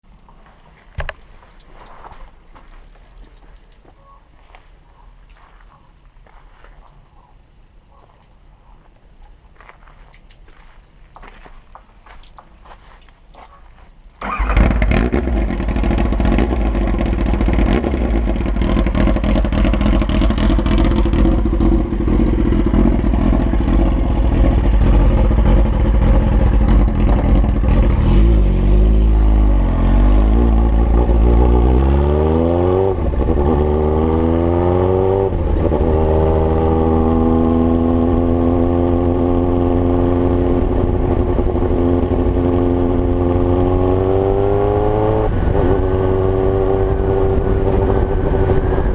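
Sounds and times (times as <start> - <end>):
motorcycle engine revving: 14.2 - 48.9.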